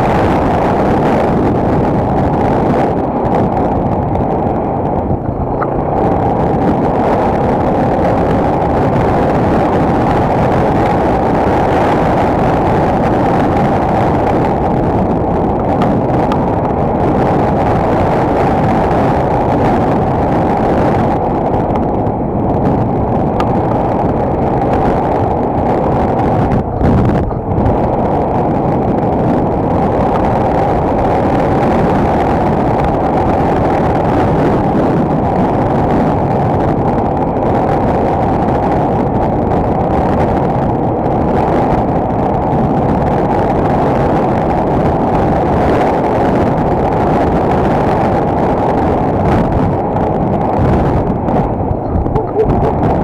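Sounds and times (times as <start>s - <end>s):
motorcycle engine running: 0.0s - 32.2s, 50.6s - 53.0s.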